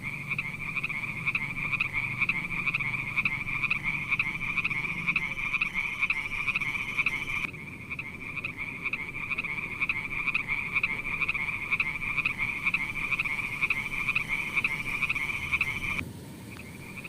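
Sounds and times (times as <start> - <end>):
frog croaking: 0.0 - 17.0.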